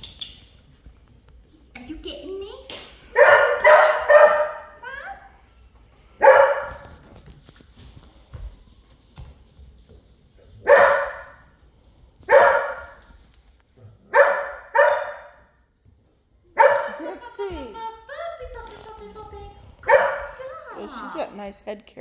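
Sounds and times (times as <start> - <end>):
dog barking: 3.1 - 5.3, 6.2 - 7.0, 10.6 - 11.4, 12.3 - 13.0, 14.1 - 15.6, 16.6 - 17.3, 19.8 - 20.5.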